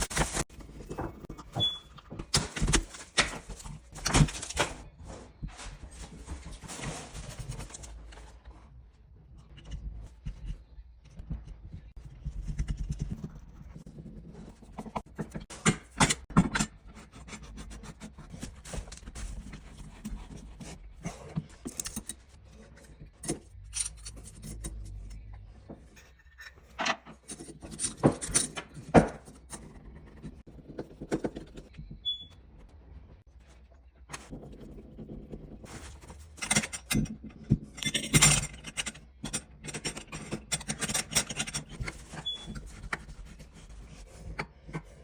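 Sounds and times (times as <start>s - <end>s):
parts and tools clicking and knocking: 14.7s - 17.3s, 21.2s - 32.2s, 35.2s - 43.5s.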